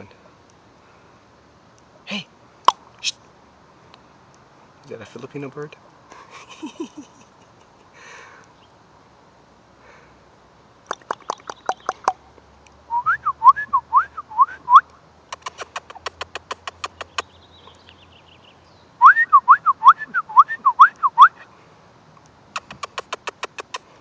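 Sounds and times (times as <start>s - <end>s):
sharp tongue clicks: 10.8s - 12.8s, 14.7s - 18.0s, 22.2s - 24.0s
person whistling: 12.9s - 14.8s, 19.0s - 21.4s.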